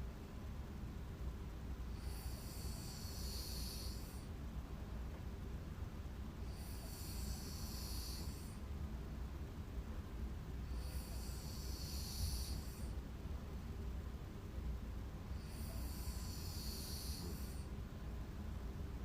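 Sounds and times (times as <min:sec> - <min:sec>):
person snoring: 0:01.9 - 0:04.3, 0:06.4 - 0:08.6, 0:10.7 - 0:12.9, 0:15.3 - 0:17.7.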